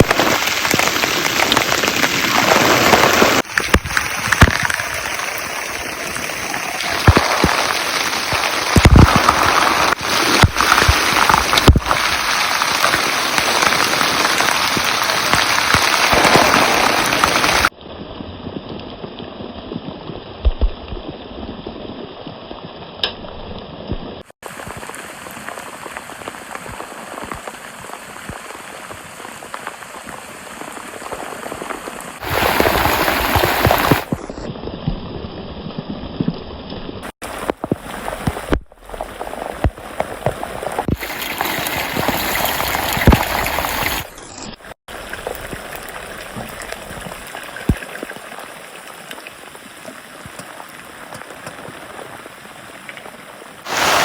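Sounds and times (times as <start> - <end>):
heavy rain hissing: 0.0 - 17.7, 24.4 - 34.4, 37.2 - 51.1, 53.5 - 54.0.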